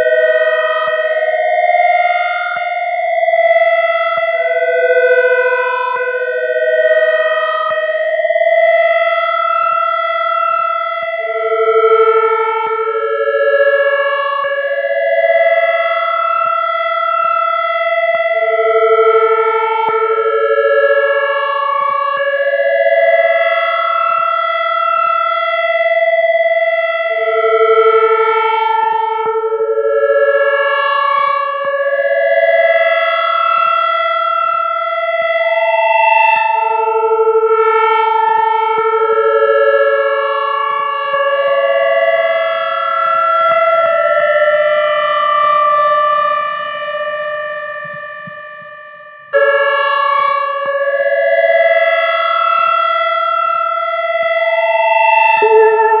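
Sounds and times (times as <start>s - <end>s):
ambient synthesizer music: 55.4s - 56.0s.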